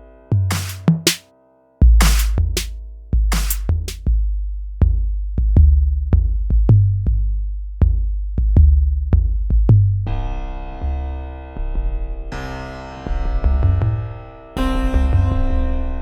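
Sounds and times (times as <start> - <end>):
drum machine bass drum beat: 0.5 - 1.2, 2.0 - 2.7, 3.3 - 4.0
sharp snare hits: 0.5 - 1.2, 2.0 - 2.7, 3.3 - 4.0.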